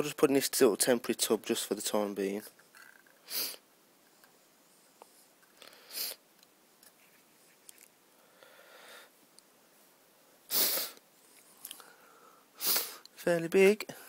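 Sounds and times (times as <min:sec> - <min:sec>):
person sniffing: 0:03.2 - 0:03.7, 0:05.6 - 0:06.2, 0:10.5 - 0:11.0, 0:12.6 - 0:13.1
person breathing: 0:05.6 - 0:06.2, 0:08.1 - 0:09.2, 0:11.6 - 0:13.1.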